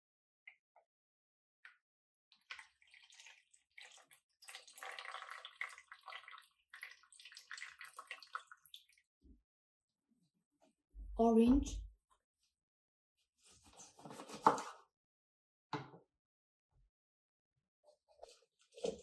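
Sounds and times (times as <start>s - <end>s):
liquid splashing and trickling: 2.3s - 9.1s.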